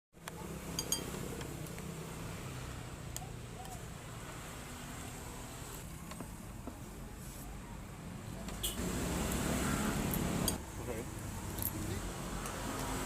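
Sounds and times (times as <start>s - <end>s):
light clinks: 0.8s - 1.2s.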